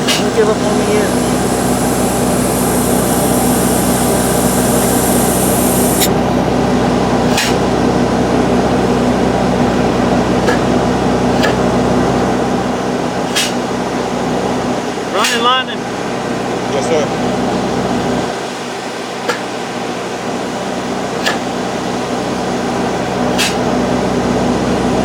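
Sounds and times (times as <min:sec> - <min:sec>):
high hiss of foam injection: 0:00.0 - 0:06.4
machine hum: 0:00.0 - 0:06.6
sharp clicks: 0:00.1 - 0:06.1.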